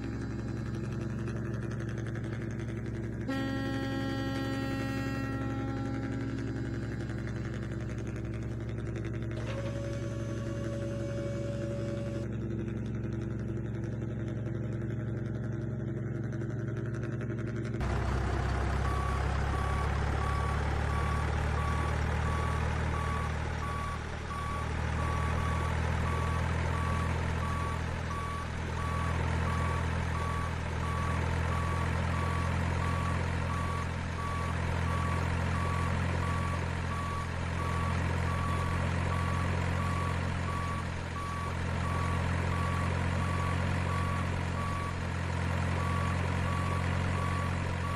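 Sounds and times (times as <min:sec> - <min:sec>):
truck engine running: 0:00.0 - 0:47.9
reversing beeper: 0:03.2 - 0:08.6, 0:09.4 - 0:12.3, 0:18.5 - 0:47.9.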